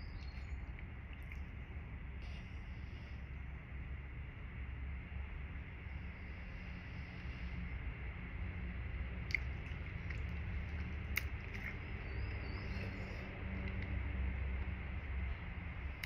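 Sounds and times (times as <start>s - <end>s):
low hum: 0.0s - 16.0s
person chewing food: 9.2s - 14.0s.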